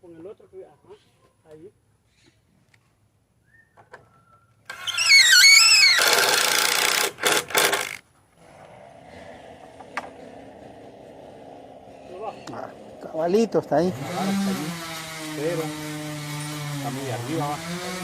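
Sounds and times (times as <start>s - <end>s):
chainsaw revving and idling: 6.1s - 18.0s.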